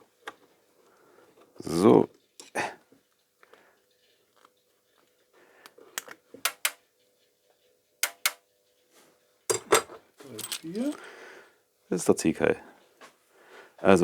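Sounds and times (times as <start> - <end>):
small metal parts clinking: 9.5 - 11.1.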